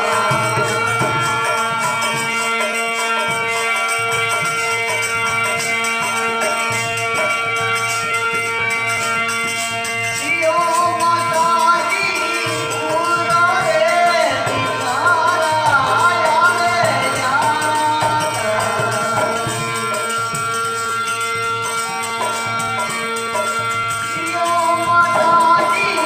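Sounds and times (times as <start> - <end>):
folk music with long held notes: 0.0 - 26.0.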